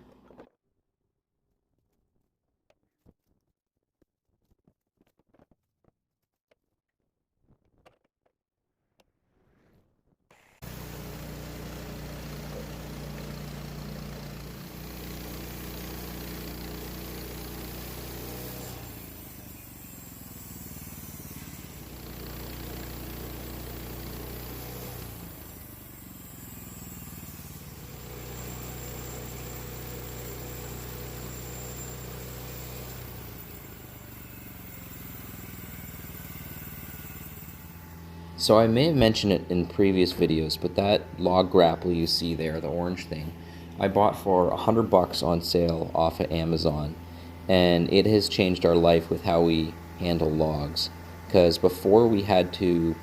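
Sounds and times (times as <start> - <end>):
engine starting and running: 0.0 - 0.5, 9.0 - 53.0.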